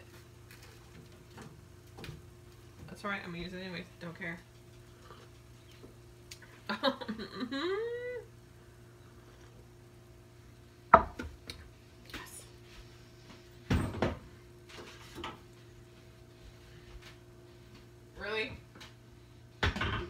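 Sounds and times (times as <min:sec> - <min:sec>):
faint steady hum: 0:00.0 - 0:20.0
kitchen knocks and clatter: 0:10.9 - 0:11.4, 0:13.6 - 0:14.3, 0:19.6 - 0:20.0.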